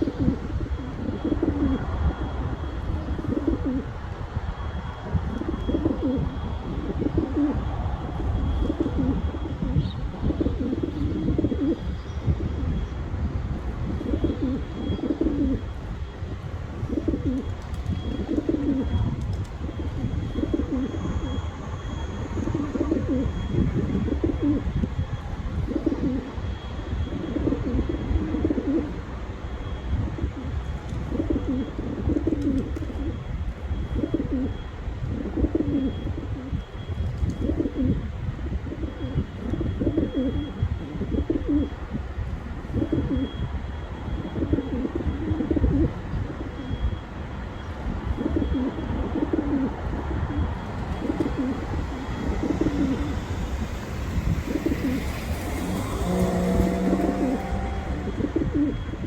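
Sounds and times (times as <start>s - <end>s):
pigeons cooing: 0.0s - 2.3s, 2.9s - 3.9s, 5.3s - 7.8s, 8.5s - 12.8s, 13.9s - 15.7s, 16.8s - 24.7s, 25.6s - 26.3s, 27.2s - 29.0s, 30.2s - 33.2s, 33.9s - 36.6s, 37.4s - 38.0s, 38.6s - 41.8s, 44.2s - 46.6s, 48.1s - 59.0s.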